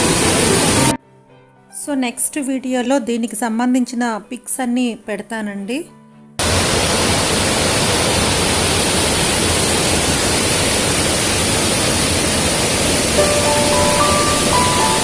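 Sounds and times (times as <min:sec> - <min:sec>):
waterfall roaring: 0:00.0 - 0:00.9, 0:06.4 - 0:15.0
music notes: 0:13.2 - 0:15.0.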